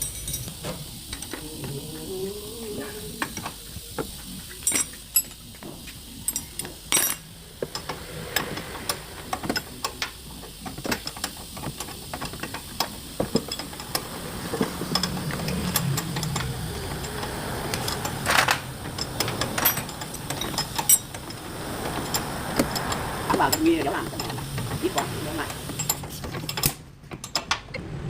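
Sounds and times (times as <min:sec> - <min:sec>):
metal tools clinking: 0:00.0 - 0:01.6, 0:03.2 - 0:27.8
ratchet clicking: 0:03.2 - 0:27.8.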